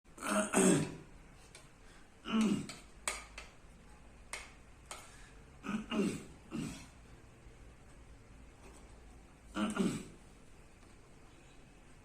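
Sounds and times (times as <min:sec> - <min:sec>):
person clearing throat: 0:00.2 - 0:01.1, 0:02.2 - 0:02.8, 0:05.6 - 0:07.0, 0:09.5 - 0:10.2.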